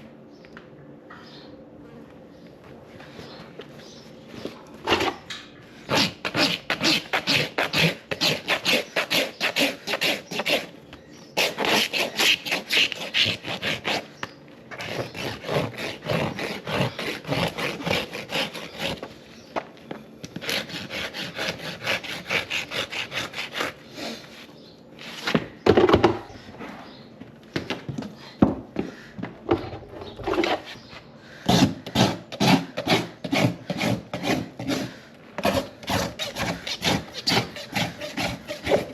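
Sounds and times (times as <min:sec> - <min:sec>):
rasp filing a horse's hoof: 0:05.9 - 0:10.8, 0:11.4 - 0:14.1, 0:14.8 - 0:19.1, 0:20.4 - 0:24.2, 0:31.5 - 0:38.9.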